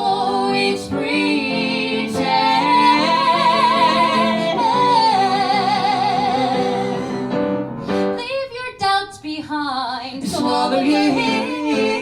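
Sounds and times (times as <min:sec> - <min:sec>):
person singing with vibrato: 0:00.0 - 0:07.4, 0:10.0 - 0:12.0.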